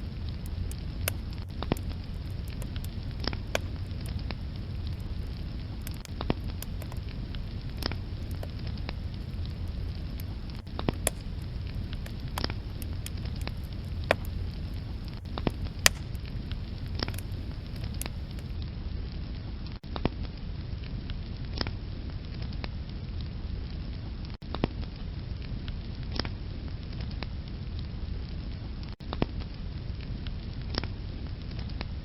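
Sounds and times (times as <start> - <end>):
logs crackling and popping: 0.0 - 18.6
low rumble of flames: 0.0 - 18.6.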